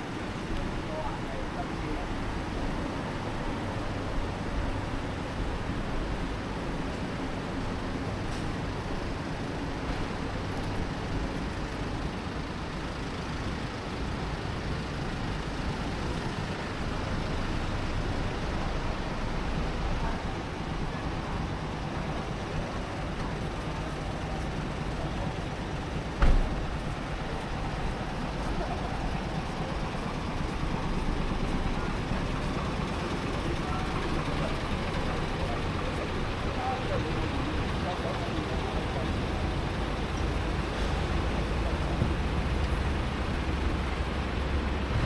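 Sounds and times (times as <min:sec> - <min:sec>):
passing cars and buses: 0:00.0 - 0:45.0
short thump: 0:26.2 - 0:26.6.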